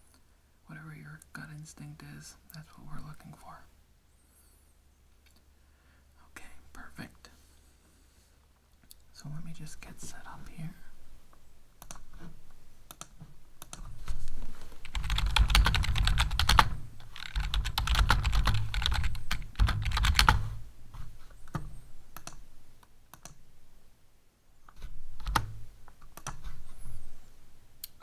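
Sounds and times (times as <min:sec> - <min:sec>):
computer keyboard typing: 0:14.8 - 0:20.6, 0:21.5 - 0:22.4, 0:25.2 - 0:25.6.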